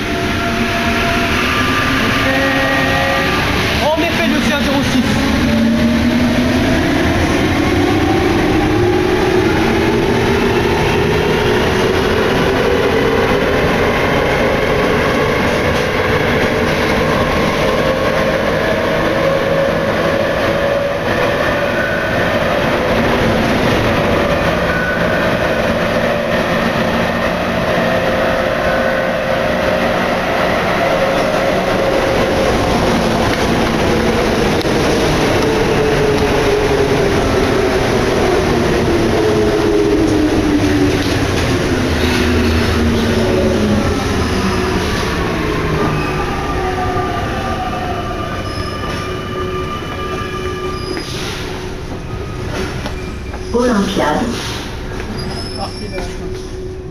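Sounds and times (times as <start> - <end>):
train running noise: 0.0 - 56.9.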